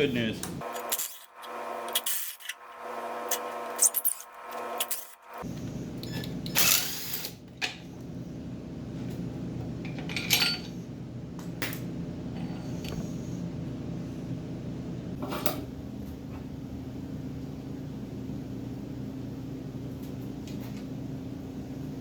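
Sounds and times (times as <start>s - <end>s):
power tool whirring: 0.6s - 5.4s, 6.5s - 7.4s
metal parts clinking: 0.7s - 1.3s, 10.0s - 10.7s
steady low hum: 1.8s - 22.0s.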